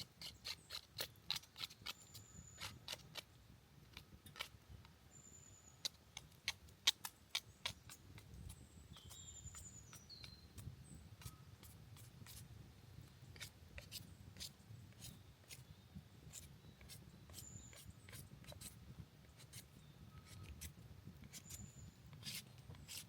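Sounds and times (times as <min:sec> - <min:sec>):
faint high bird chirps: 0:01.8 - 0:02.9, 0:05.1 - 0:06.0, 0:07.4 - 0:11.8, 0:14.8 - 0:18.8, 0:19.5 - 0:23.0.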